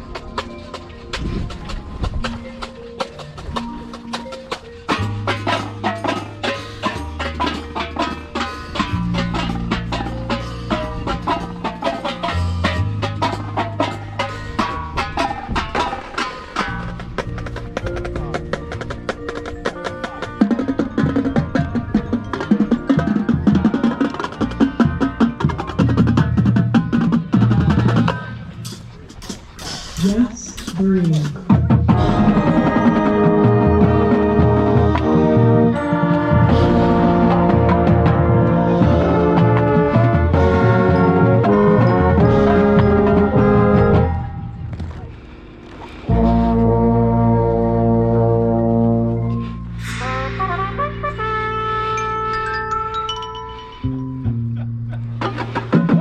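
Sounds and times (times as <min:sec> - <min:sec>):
marching band percussion: 0:00.0 - 0:45.0, 0:46.0 - 0:54.0
low brass chords: 0:31.9 - 0:44.7, 0:46.0 - 0:55.4
bass drum strokes: 0:46.1 - 0:52.1.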